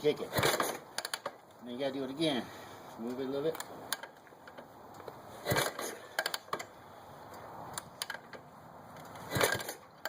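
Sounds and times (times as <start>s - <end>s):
engine turning over: 0.2s - 1.4s, 5.3s - 6.8s, 9.0s - 10.0s.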